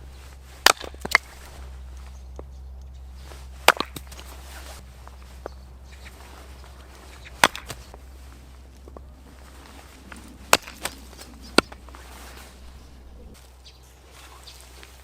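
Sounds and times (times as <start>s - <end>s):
axe chopping firewood: 0.3s - 1.6s, 3.4s - 4.6s, 7.1s - 12.7s.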